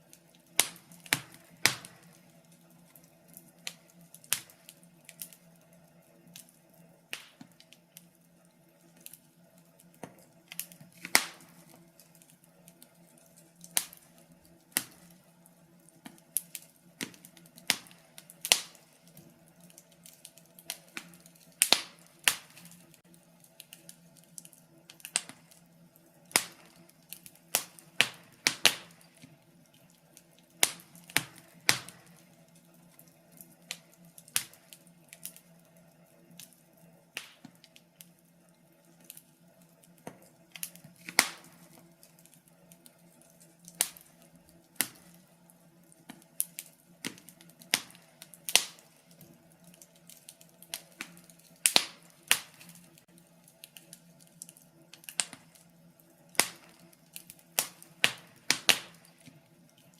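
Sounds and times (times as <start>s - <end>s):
burning logs popping: 0.0s - 59.9s
wood fire crackling: 0.0s - 59.9s.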